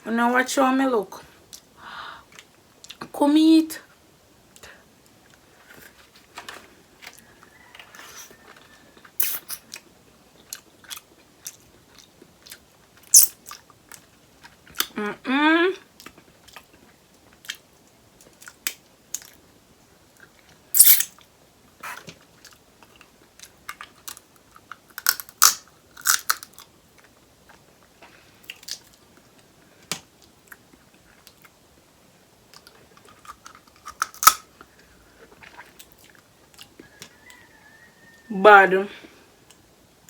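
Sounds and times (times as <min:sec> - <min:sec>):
crab shells cracking: 0:23.5 - 0:26.7, 0:33.0 - 0:34.8
chewing and biting: 0:32.5 - 0:34.5.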